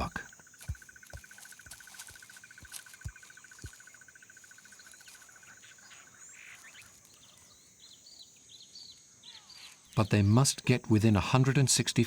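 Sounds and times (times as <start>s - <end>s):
pulsed insect trill: 0.0s - 8.2s
high-pitched insect whine: 0.0s - 10.0s.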